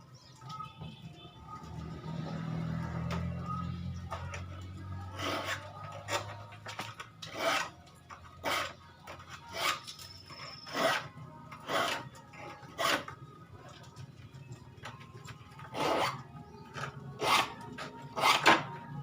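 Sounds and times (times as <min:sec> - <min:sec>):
file rasping on saw teeth: 0:07.3 - 0:07.7, 0:10.7 - 0:12.0, 0:15.7 - 0:16.2, 0:17.2 - 0:17.6.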